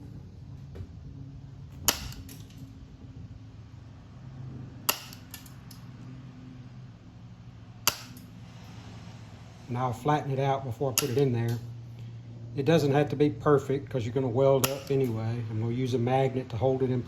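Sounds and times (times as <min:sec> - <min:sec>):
steady low hum: 0:00.0 - 0:17.0
hand snips cutting sheet metal: 0:14.6 - 0:15.2.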